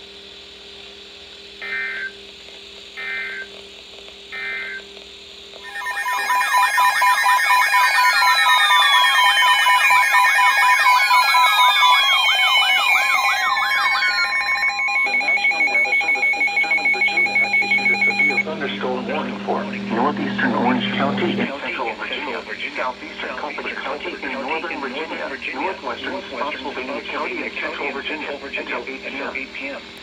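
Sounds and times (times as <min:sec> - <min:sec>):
rapid even beeping: 0:05.6 - 0:28.6
buzzy data bursts: 0:08.1 - 0:29.6
overlapping alert tones: 0:11.2 - 0:19.6.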